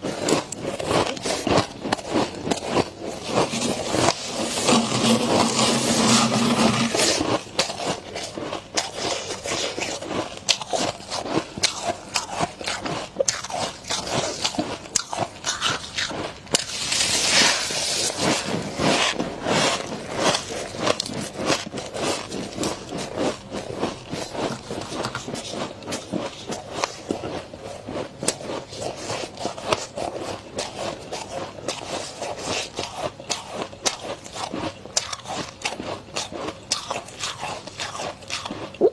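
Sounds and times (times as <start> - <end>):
crunching frost being chewed: 0.0 - 38.9.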